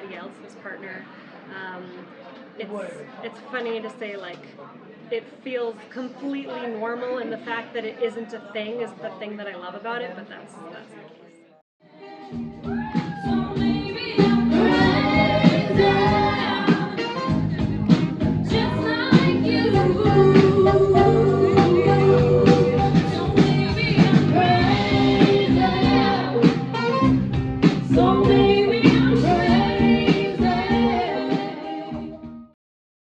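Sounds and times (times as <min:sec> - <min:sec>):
song with singing and percussion: 0:11.8 - 0:32.5.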